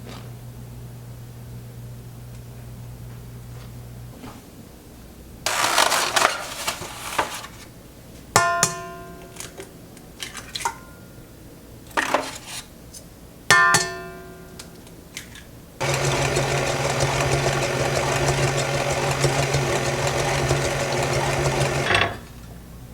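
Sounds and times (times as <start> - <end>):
utensils and dishes clattering: 5.5 - 7.5.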